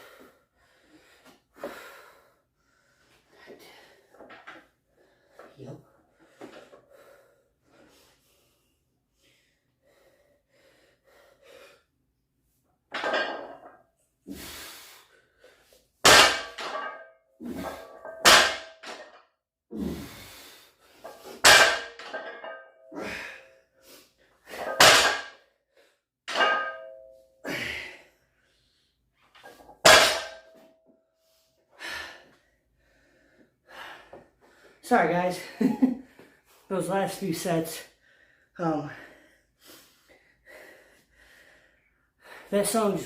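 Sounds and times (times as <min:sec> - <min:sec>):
hard breathing: 0:00.0 - 0:12.0, 0:31.2 - 0:34.8, 0:37.8 - 0:42.5
barbell set down on floor: 0:12.9 - 0:13.8, 0:21.4 - 0:22.6
metallic clang: 0:26.3 - 0:27.1, 0:29.9 - 0:30.6.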